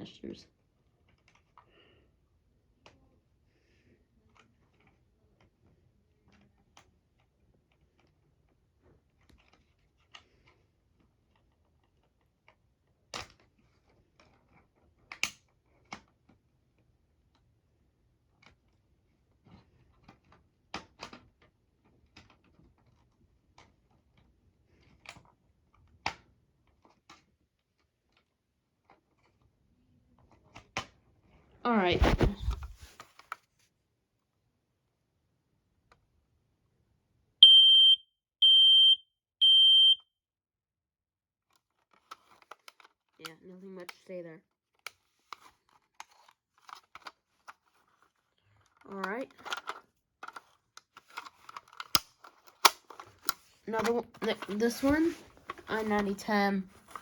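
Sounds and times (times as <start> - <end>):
sharp plastic snaps: 49.1 - 55.8
plastic clicks and knocks: 49.3 - 56.1.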